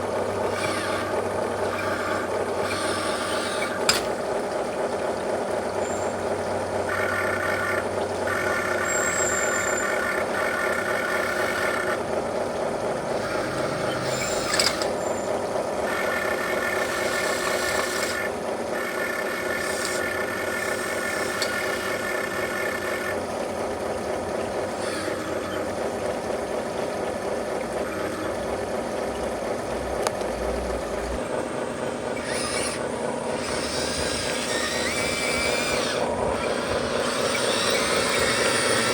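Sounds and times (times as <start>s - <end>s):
electric motor and gears whirring: 0.0s - 38.9s
small clicks: 19.6s - 20.2s.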